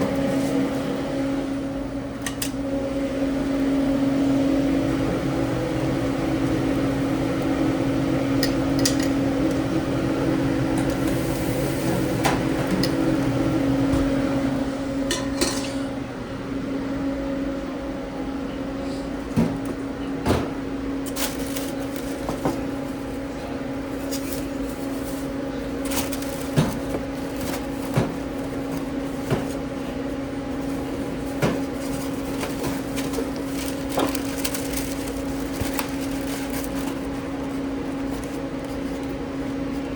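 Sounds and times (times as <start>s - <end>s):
kitchen equipment humming: 0.0s - 17.4s, 19.0s - 39.9s
pans and utensils clinking: 15.1s - 15.8s.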